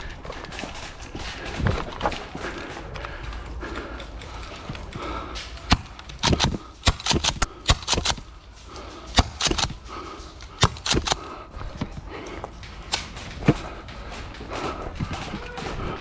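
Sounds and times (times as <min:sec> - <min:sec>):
airsoft guns firing: 0:04.9 - 0:08.4, 0:09.0 - 0:11.4.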